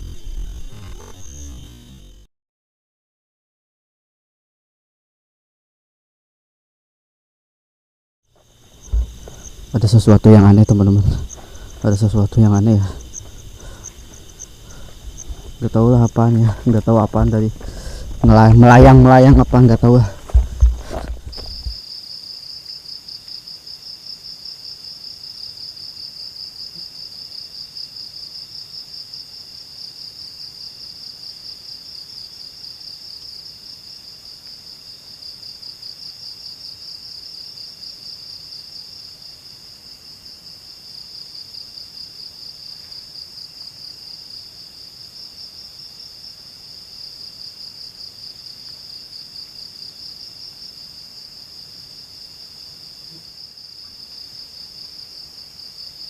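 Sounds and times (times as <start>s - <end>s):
faint higher insect trill: 0.0s - 2.3s, 8.3s - 56.0s
insect pulsing trill: 0.0s - 2.3s, 8.4s - 22.8s.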